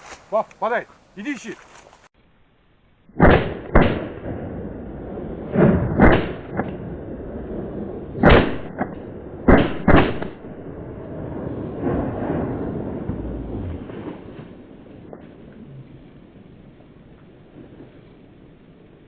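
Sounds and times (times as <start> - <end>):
background hiss: 0.0 - 4.0
shotgun shots: 3.2 - 4.4, 5.5 - 6.8, 8.2 - 10.4.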